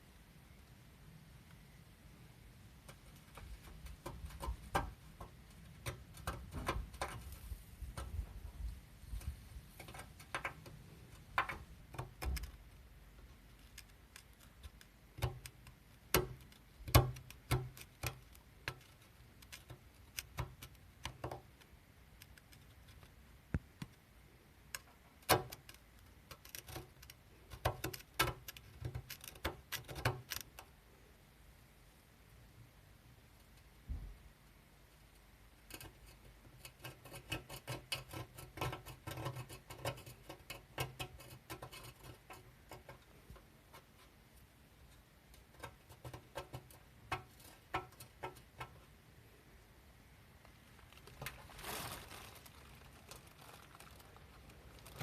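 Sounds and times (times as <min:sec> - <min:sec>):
light clicks and taps: 0:02.8 - 0:08.4.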